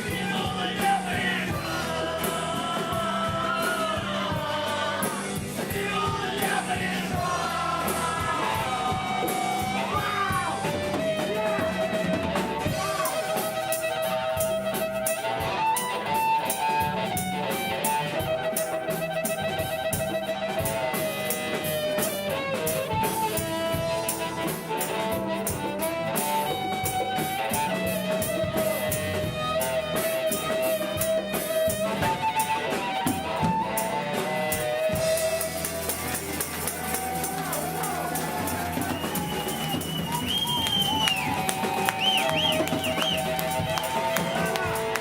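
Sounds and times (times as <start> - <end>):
strummed guitar: 0.0 - 45.0
harmonica melody: 37.8 - 45.0.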